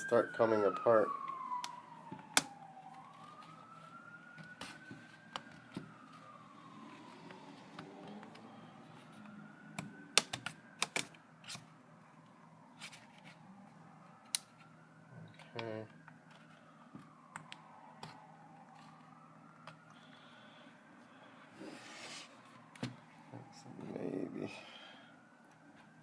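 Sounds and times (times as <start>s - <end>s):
siren wailing: 0.0s - 26.0s
plastic clicks and snaps: 9.8s - 11.6s.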